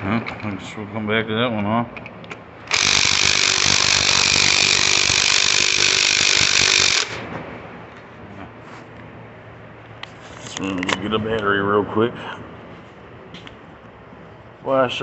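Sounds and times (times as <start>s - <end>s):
impact wrench hammering: 2.7s - 7.2s.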